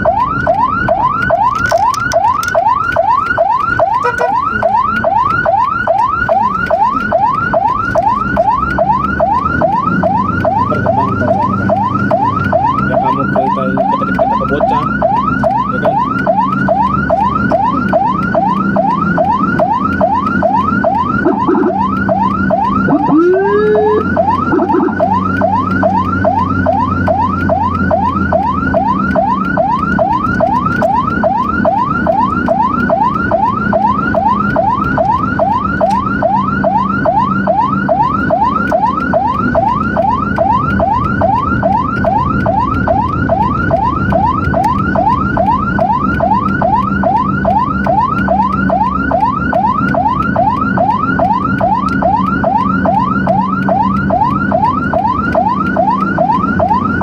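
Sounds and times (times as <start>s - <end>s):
engine and road noise: 0.0s - 57.0s
siren yelping: 0.0s - 57.0s
short rising siren whoop: 14.2s - 57.0s.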